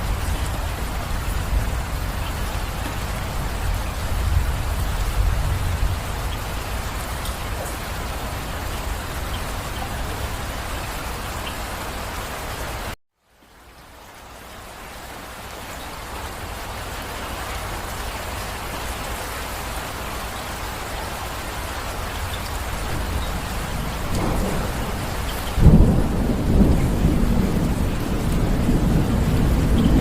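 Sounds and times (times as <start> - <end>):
rolling thunder: 0.0 - 10.7, 22.6 - 30.0
steady rain: 0.0 - 30.0
loud thunderclap: 22.9 - 30.0.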